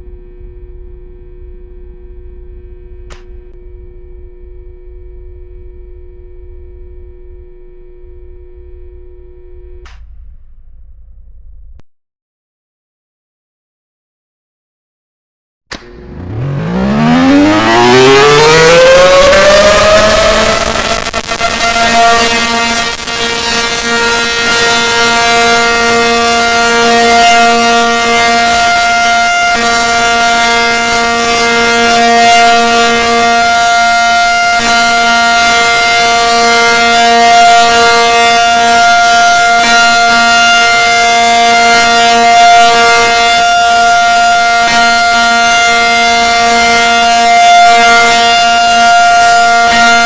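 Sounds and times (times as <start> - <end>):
warning siren steady tone: 0.0 - 10.0, 15.7 - 50.0.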